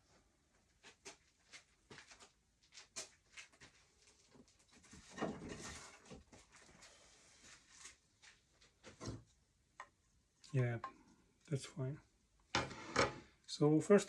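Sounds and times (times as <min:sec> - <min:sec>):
wood rubbing scrape: 0:12.6 - 0:13.2.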